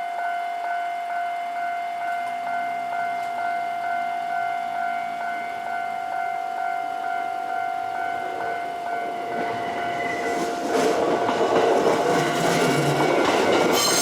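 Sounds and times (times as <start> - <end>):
level crossing warning bell: 0.0 - 14.0
train running noise: 4.8 - 14.0.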